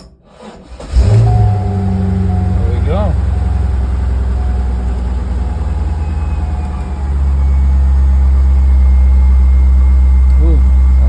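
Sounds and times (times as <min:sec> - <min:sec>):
car engine idling: 0:00.6 - 0:11.0.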